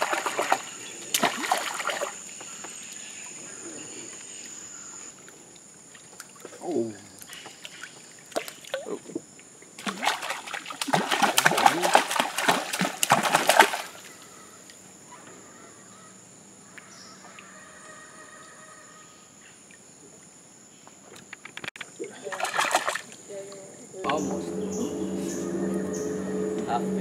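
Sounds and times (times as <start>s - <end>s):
water splashing: 0.0s - 2.4s, 9.8s - 14.2s, 22.0s - 23.2s
faint high whine: 24.1s - 27.0s.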